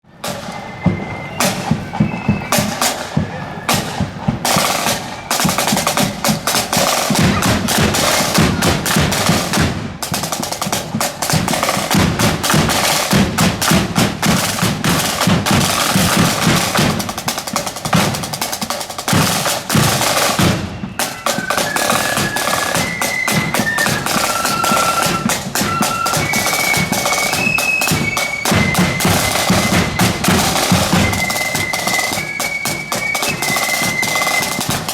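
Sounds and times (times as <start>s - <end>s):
snare drums rolling: 0.1s - 34.9s
high melody of held notes: 20.0s - 34.9s.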